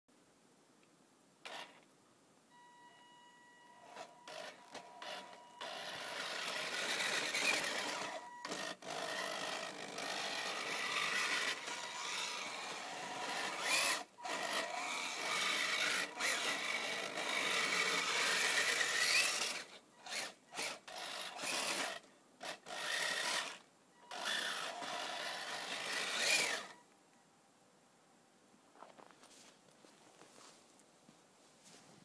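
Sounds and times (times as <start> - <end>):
electric motors and gears whirring: 1.4 - 1.8, 3.7 - 26.8.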